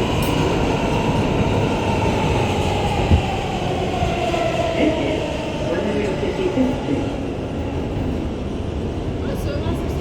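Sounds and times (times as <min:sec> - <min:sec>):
subway wheels rumbling on track: 0:00.0 - 0:10.0.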